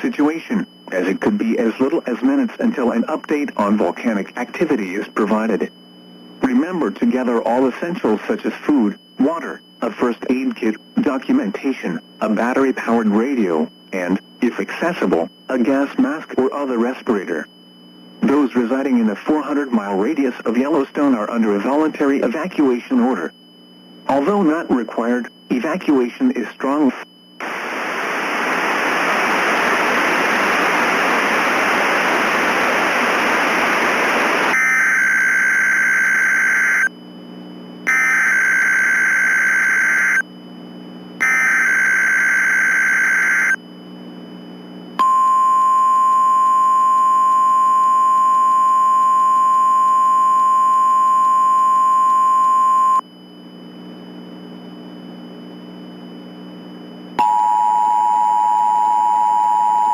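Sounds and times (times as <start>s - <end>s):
radio static: 0.0s - 5.8s, 6.4s - 17.5s, 18.2s - 23.4s, 24.1s - 36.9s, 37.9s - 40.2s
screechy digital data tones: 34.5s - 36.9s, 37.9s - 40.3s, 41.2s - 43.6s
two-tone attention signal: 45.0s - 53.0s, 57.2s - 59.9s.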